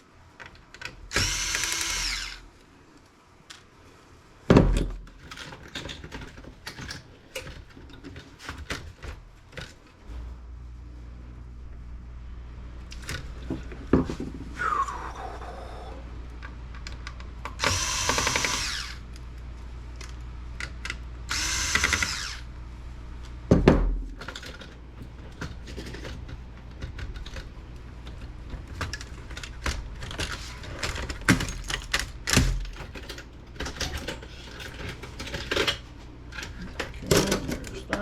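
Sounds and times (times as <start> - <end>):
power screwdriver whirring: 1.1 - 2.5, 17.6 - 19.0, 21.3 - 22.5.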